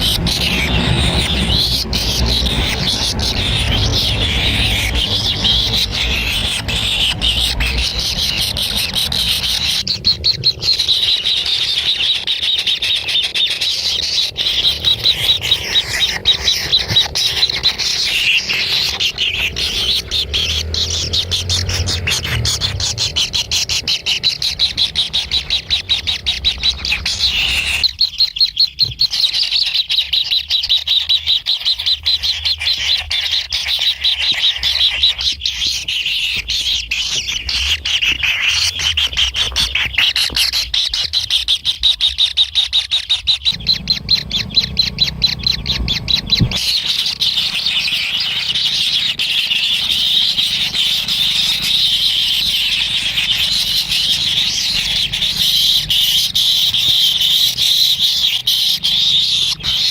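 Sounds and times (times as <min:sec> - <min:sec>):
low rumble: 0:00.0 - 0:11.4, 0:14.3 - 0:27.8, 0:43.5 - 0:47.8
chicks chirping: 0:00.0 - 0:59.9.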